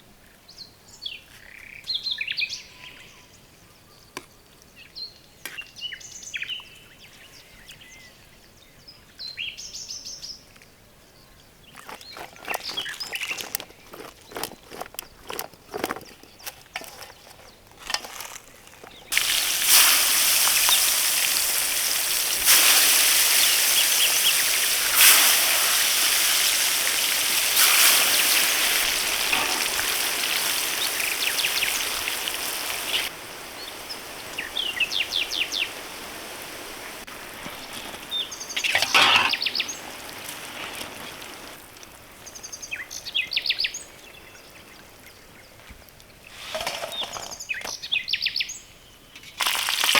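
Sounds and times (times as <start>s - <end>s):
background noise: 0.0s - 49.9s
birds chirping: 11.1s - 49.4s
loud hissing noise: 19.1s - 41.6s.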